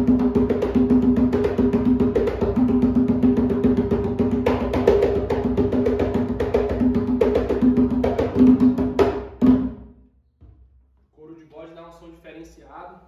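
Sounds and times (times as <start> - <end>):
hand drum fast rhythm: 0.0 - 9.8
sharp drum slaps: 0.0 - 9.8.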